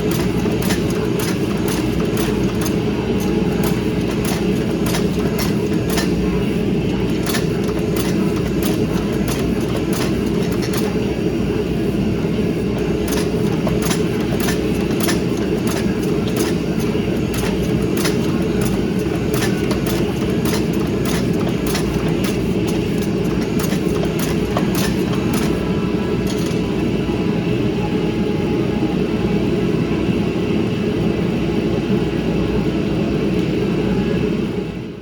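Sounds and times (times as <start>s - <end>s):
gas forge burner roar: 0.0s - 27.2s
sharp ticks and clicks: 12.8s - 25.6s.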